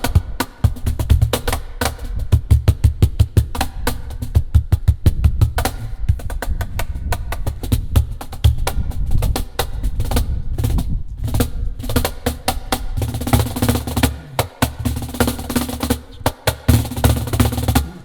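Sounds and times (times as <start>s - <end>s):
hand percussion strikes: 13.0s - 18.0s.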